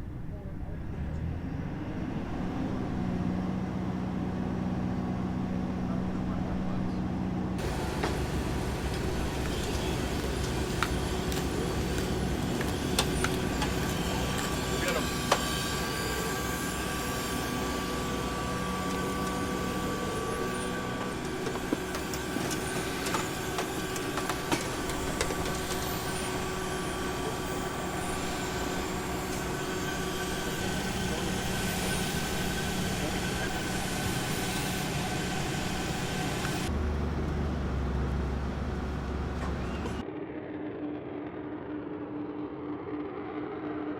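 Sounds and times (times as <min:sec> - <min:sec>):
machinery whining: 0:00.0 - 0:43.9.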